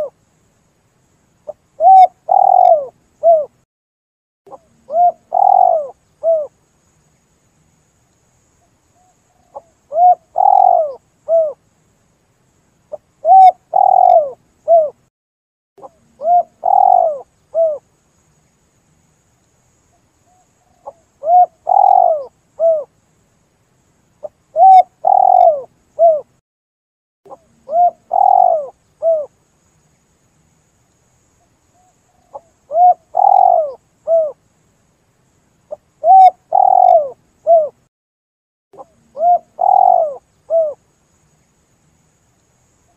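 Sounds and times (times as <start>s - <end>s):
dove cooing: 1.5s - 3.6s, 4.5s - 6.5s, 9.5s - 11.6s, 12.9s - 15.0s, 15.8s - 17.8s, 20.8s - 22.9s, 24.5s - 26.3s, 27.3s - 29.3s, 32.2s - 34.4s, 36.0s - 37.8s, 38.8s - 40.8s.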